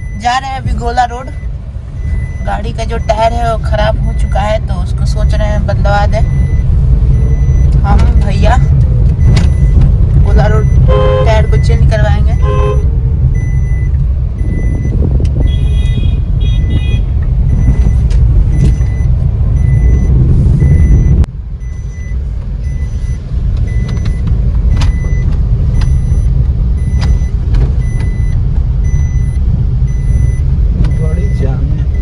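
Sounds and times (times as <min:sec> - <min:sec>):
car road noise rumble: 0:00.0 - 0:32.0.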